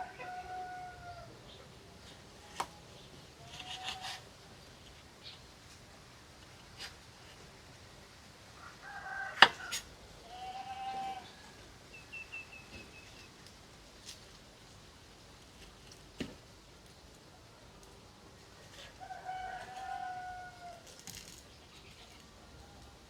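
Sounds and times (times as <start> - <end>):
farmyard animals calling: 0.0 - 1.3, 3.4 - 4.2, 9.0 - 11.5.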